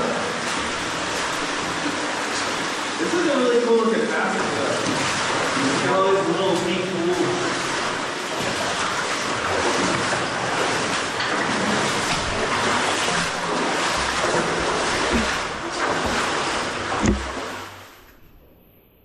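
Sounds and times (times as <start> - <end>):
water rushing in a cave: 0.0 - 18.3
soft low thuds: 13.3 - 17.6
sharp knock: 17.0 - 17.5.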